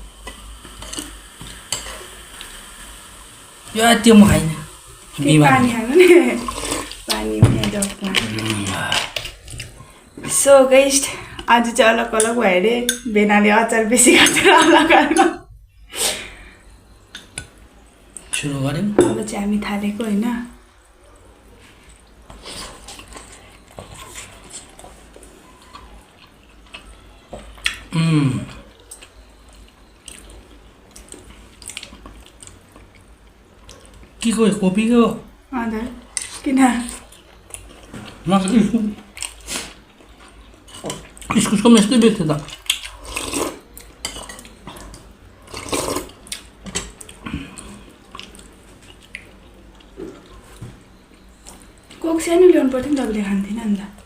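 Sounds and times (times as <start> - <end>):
dishes and cutlery clinking: 18.3 - 19.3, 44.0 - 45.0
chewing and mouth sounds: 21.8 - 34.3, 36.0 - 41.6, 42.3 - 52.0.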